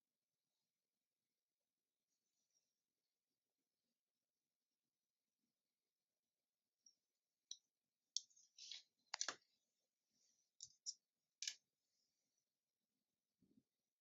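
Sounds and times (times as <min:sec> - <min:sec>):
small sharp clicks and taps: 0:06.8 - 0:09.6, 0:10.6 - 0:11.7.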